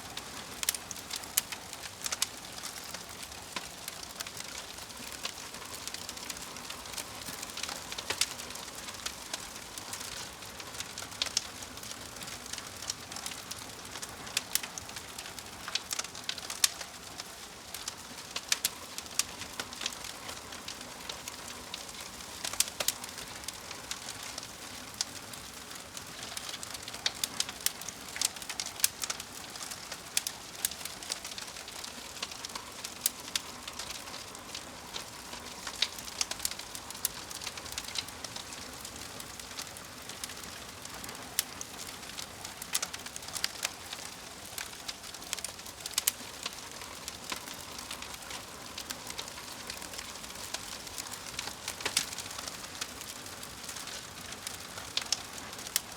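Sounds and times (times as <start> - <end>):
wood fire crackling: 0.0 - 55.9.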